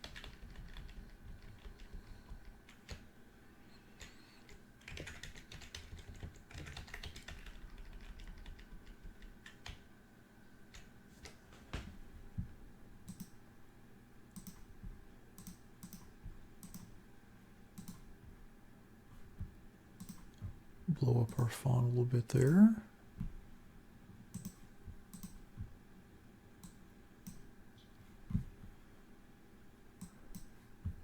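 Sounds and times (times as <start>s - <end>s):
computer keyboard typing: 0.0s - 3.1s, 4.0s - 9.9s, 13.1s - 13.3s, 14.4s - 14.7s, 15.4s - 17.0s, 17.8s - 18.1s, 20.0s - 20.4s, 24.3s - 25.4s.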